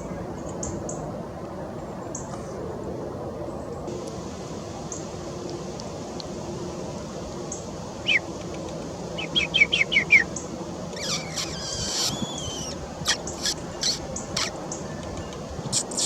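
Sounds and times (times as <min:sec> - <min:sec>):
songbirds singing: 0:07.5 - 0:08.3, 0:09.1 - 0:16.0
harsh buzzy bird call: 0:10.9 - 0:14.9
sharp bird chips: 0:11.0 - 0:16.0.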